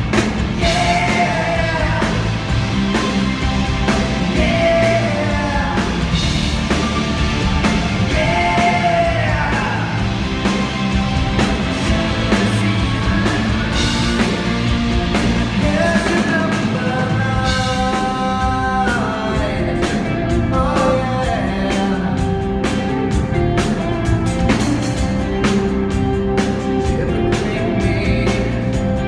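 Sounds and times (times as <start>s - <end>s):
drum beat: 0.0s - 16.5s
rock band playing: 0.0s - 29.0s
person singing: 8.1s - 10.0s.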